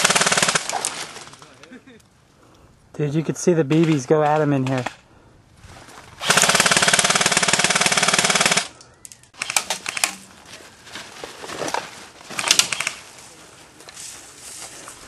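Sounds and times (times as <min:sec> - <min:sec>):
airsoft gun full-auto bursts: 0:00.0 - 0:00.8, 0:06.2 - 0:08.7, 0:09.4 - 0:10.1, 0:12.4 - 0:13.0.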